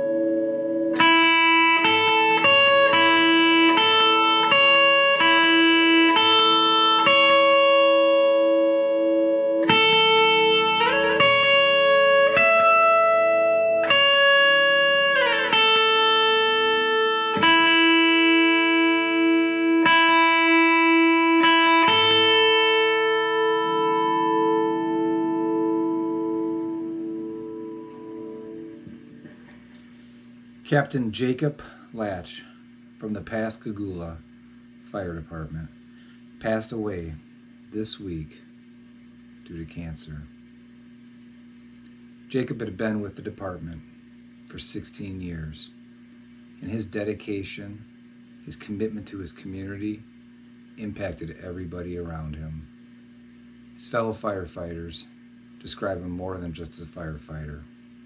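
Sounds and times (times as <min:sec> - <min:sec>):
slow guitar playing: 0:00.0 - 0:31.2.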